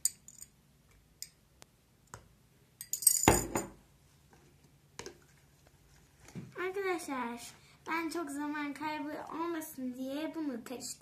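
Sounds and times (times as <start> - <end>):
metal spoon clinking on glass: 2.8 - 3.7.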